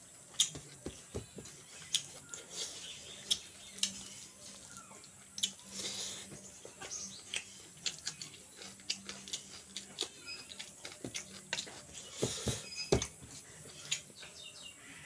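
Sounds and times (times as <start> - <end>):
person chewing with wet smacks: 1.7 - 4.1, 4.9 - 5.9, 6.6 - 12.2
dull thumps: 12.2 - 13.4.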